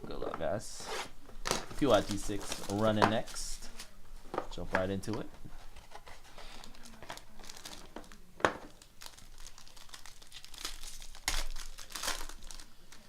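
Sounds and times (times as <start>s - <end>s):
plastic wrapping crinkling and tearing: 1.4s - 3.9s, 5.8s - 13.0s.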